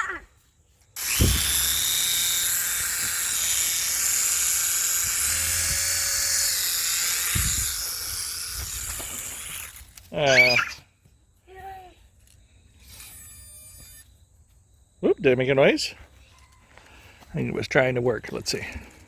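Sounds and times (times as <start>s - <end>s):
toy helicopter motor whining: 0.9s - 10.8s, 12.8s - 14.2s
low bumps: 1.0s - 3.3s.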